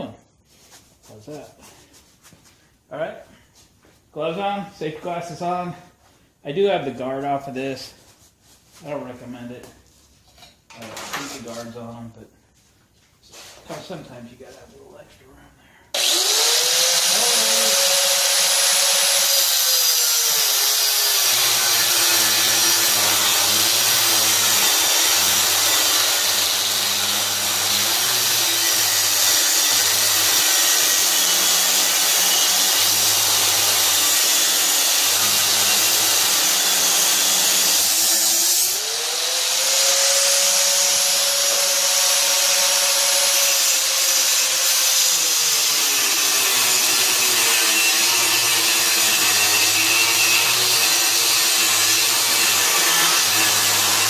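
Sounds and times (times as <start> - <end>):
angle grinder motor whining: 16.0 - 37.9
grinding steel: 16.0 - 54.0.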